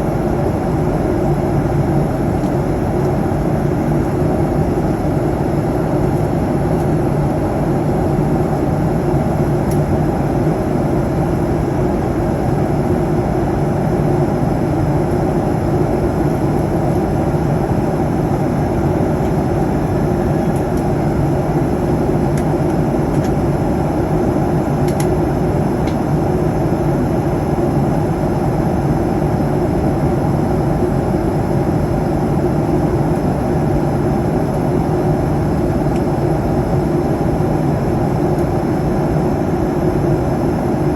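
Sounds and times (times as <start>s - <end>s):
airliner cabin engine noise: 0.0s - 40.9s.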